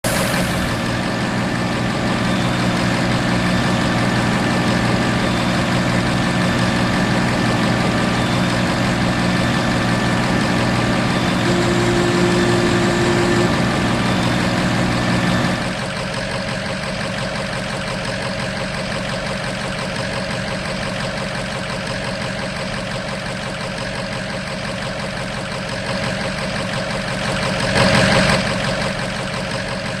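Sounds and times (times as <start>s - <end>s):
short rush: 0.0s - 2.2s
engine idling: 0.0s - 30.0s.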